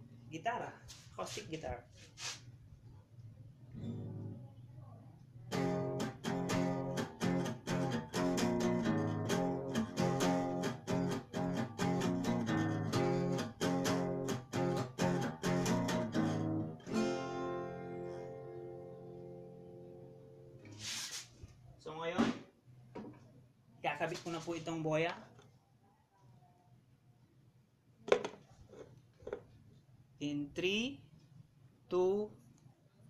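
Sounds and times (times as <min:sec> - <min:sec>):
acoustic guitar strumming: 0:03.8 - 0:04.4, 0:05.5 - 0:20.5.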